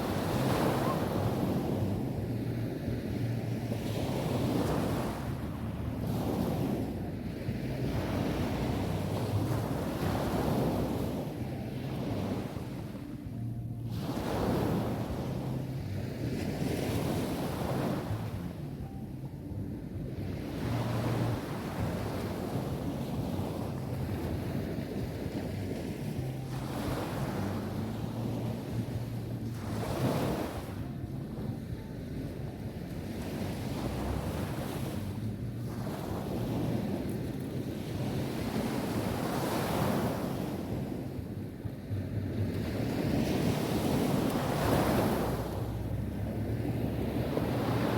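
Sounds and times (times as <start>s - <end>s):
wind rumble on microphone: 0.0s - 47.9s
sea waves breaking on beach: 20.4s - 30.9s, 33.0s - 41.1s, 42.4s - 47.9s.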